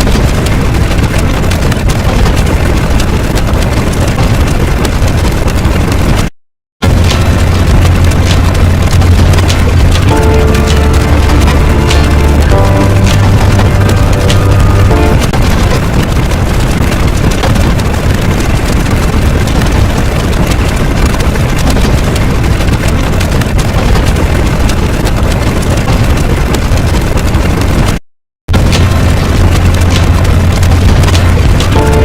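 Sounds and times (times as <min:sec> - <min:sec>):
loud steady rumbling: 0:00.0 - 0:32.0
loud music with heavy bass: 0:06.8 - 0:15.3, 0:28.5 - 0:32.0
sharp percussive hits: 0:06.8 - 0:15.4, 0:28.5 - 0:32.0.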